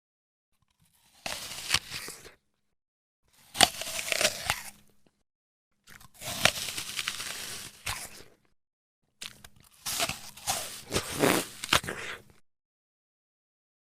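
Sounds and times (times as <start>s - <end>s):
person chewing crunchy food: 0.6s - 2.4s, 3.3s - 5.2s, 5.8s - 8.5s, 9.2s - 12.4s.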